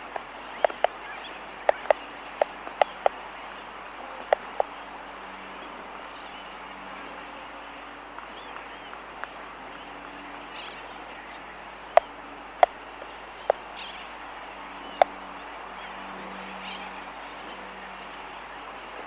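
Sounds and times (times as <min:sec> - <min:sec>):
albatrosses clicking: 0:00.0 - 0:06.2, 0:10.5 - 0:19.0
distant tern chatter: 0:00.0 - 0:19.0
low steady hum: 0:00.0 - 0:19.0.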